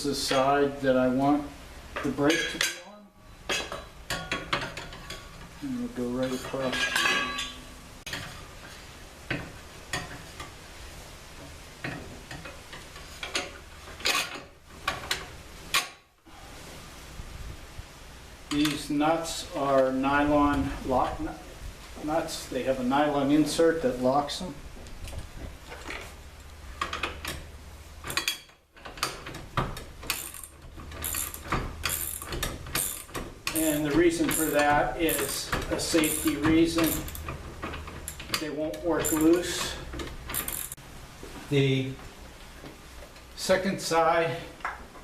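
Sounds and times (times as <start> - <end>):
metal bolts and nuts clinking: 2.0 - 2.9, 6.2 - 8.4, 11.8 - 16.0, 26.8 - 40.8
metallic clicks and rattles of hardware: 26.8 - 40.8.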